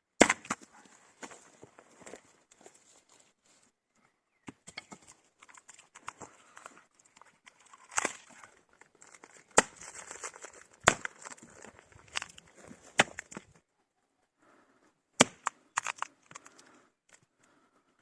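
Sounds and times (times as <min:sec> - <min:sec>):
rustling and crackling: 0:04.9 - 0:13.6.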